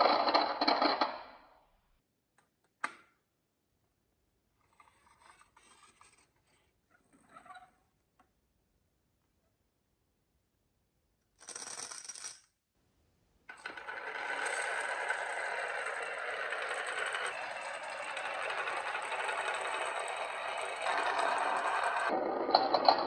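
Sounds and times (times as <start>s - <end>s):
marbles rolling and clattering: 0.0s - 1.3s, 13.5s - 23.0s.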